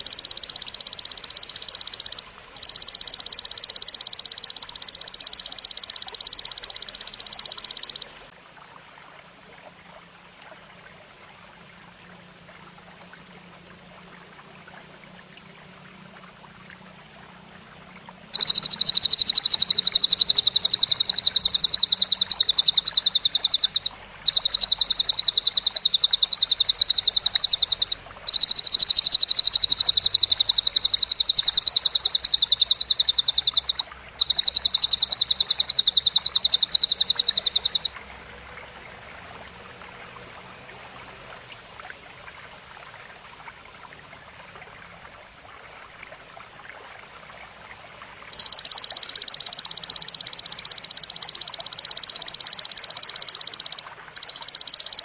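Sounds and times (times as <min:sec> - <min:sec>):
rapid buzzing bird trill: 0:00.0 - 0:08.2, 0:18.4 - 0:38.0, 0:48.3 - 0:55.0.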